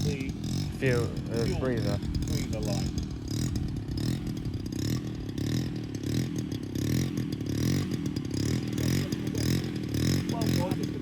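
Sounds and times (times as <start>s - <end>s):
model plane engine idling: 0.0s - 11.0s.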